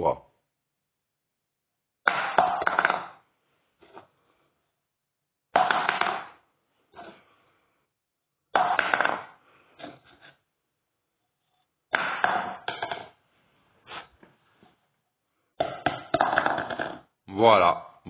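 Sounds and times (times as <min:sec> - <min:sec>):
plastic cups clattering on floor: 0:02.1 - 0:03.3, 0:05.5 - 0:06.4, 0:08.5 - 0:10.0, 0:11.9 - 0:13.2, 0:15.6 - 0:17.1.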